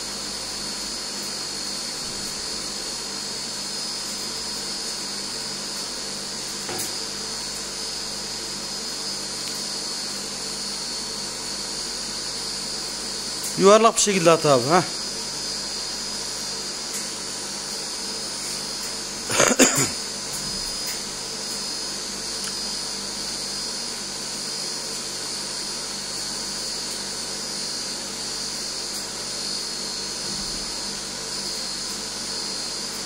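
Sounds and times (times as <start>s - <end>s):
cotton candy machine whirring: 1.0s - 33.0s.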